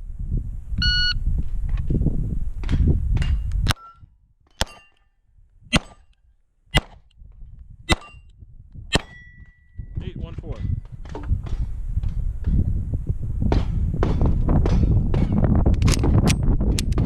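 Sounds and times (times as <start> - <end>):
pistol shots: 4.6 - 4.9, 5.7 - 6.0, 6.8 - 7.0, 7.9 - 8.2, 8.9 - 9.3.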